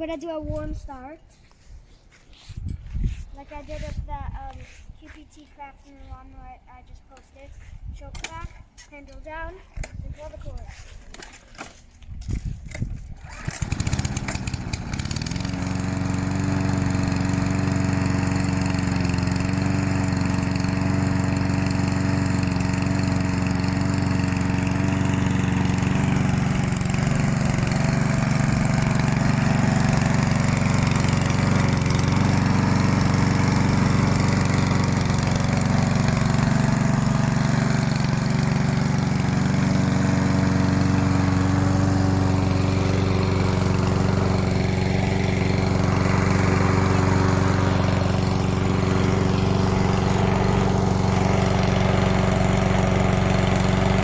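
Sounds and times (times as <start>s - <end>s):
lawnmower engine running: 12.6s - 54.0s.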